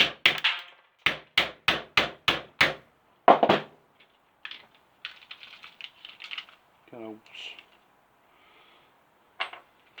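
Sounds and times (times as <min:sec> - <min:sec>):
small clatters: 0:04.0 - 0:06.6.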